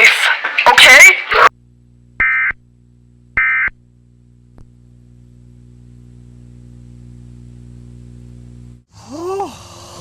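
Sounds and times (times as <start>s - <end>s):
low droning hum: 1.5s - 8.9s.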